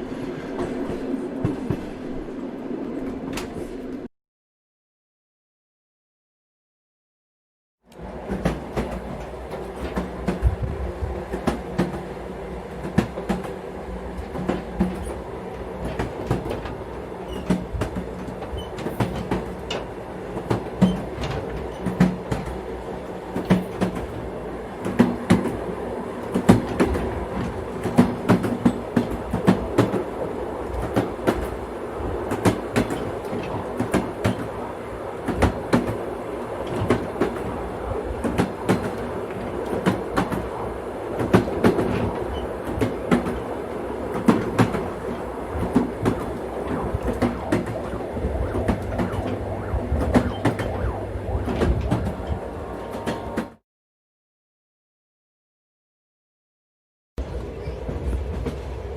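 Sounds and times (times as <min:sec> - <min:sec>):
train running gear rumble: 0:08.0 - 0:53.6.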